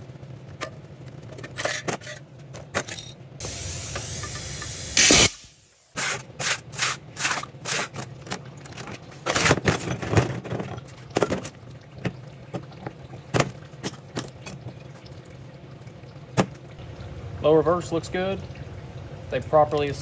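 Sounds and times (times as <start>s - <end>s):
metal parts clinking and scraping: 1.2s - 3.3s.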